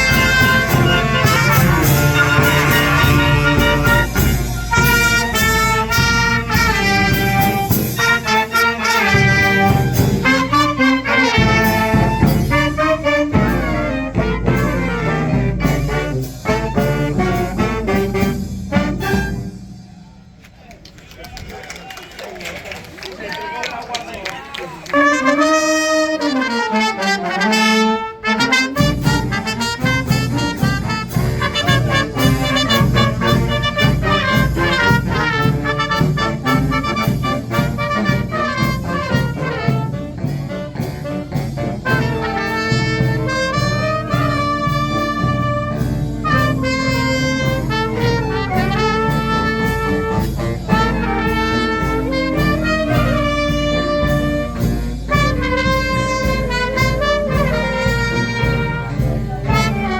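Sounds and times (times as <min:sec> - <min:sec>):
brass and drum band playing: 0:00.0 - 0:21.8, 0:24.5 - 0:59.9.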